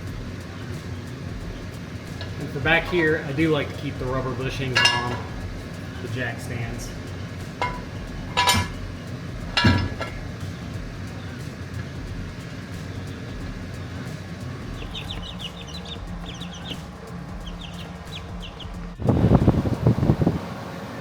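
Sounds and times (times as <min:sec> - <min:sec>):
chickens clucking: 0:00.0 - 0:18.7
ringing metal clanks: 0:01.6 - 0:12.5.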